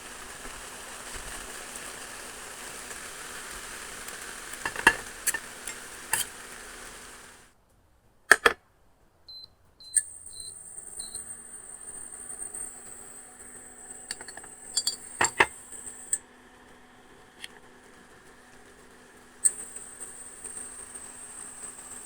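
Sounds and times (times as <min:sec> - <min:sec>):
eggs sizzling in a frying pan: 0:00.0 - 0:07.5, 0:10.0 - 0:22.0
sharp clicks: 0:08.3 - 0:08.6
short high electronic beeps: 0:09.3 - 0:12.0
metal clinks on pan: 0:14.1 - 0:15.6.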